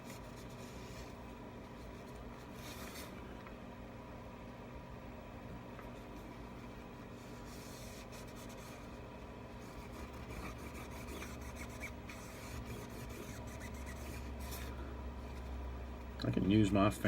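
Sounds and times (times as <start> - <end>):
faint rubbing and scratching: 0.0 - 3.2, 6.0 - 15.5.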